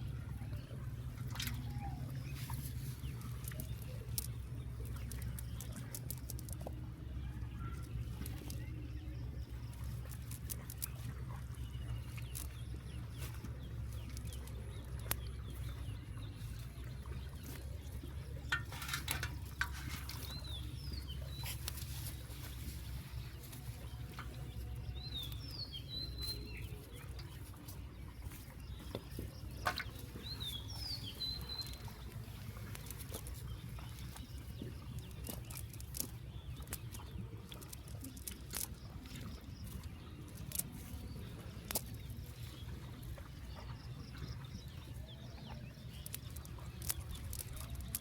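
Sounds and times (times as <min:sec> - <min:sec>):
clicks and light patter: 0:00.5 - 0:48.0
bird chirps: 0:19.8 - 0:48.0.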